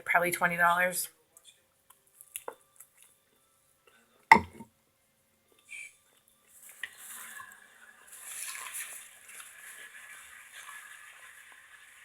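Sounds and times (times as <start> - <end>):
soft eating noises: 1.2 - 4.3, 5.5 - 11.4.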